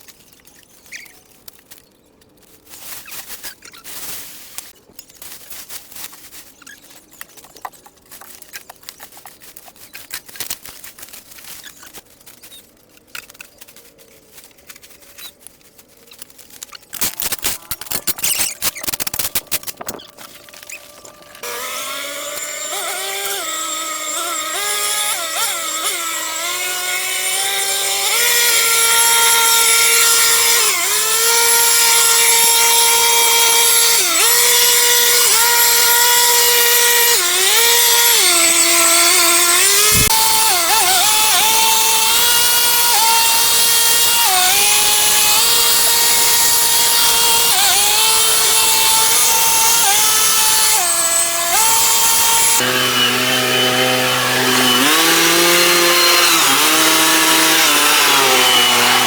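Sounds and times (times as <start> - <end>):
small power tool motor revving: 17.0 - 59.0.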